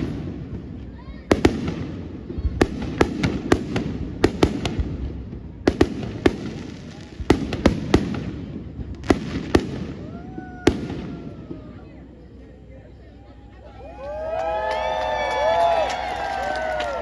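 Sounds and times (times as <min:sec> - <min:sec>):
fireworks bangs: 0:00.0 - 0:12.7.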